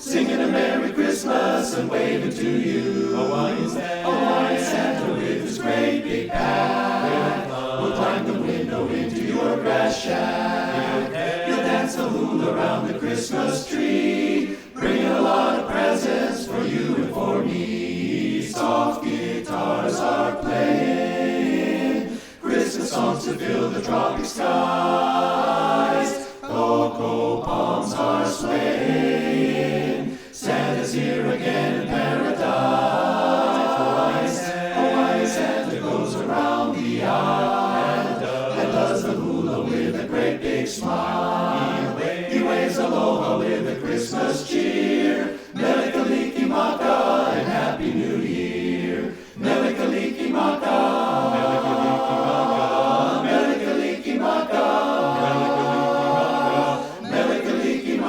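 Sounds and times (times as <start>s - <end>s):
a cappella chorus singing: 0.0s - 58.0s
singers breathing: 14.4s - 14.8s, 22.0s - 22.5s, 26.2s - 26.4s, 30.0s - 30.4s, 45.3s - 45.6s, 49.1s - 49.4s.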